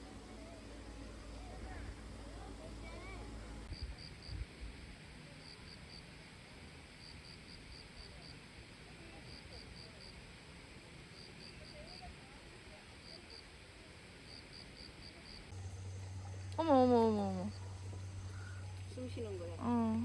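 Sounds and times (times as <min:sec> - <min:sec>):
faint outdoor hush: 0:00.0 - 0:20.0
insect chirping: 0:14.3 - 0:20.0.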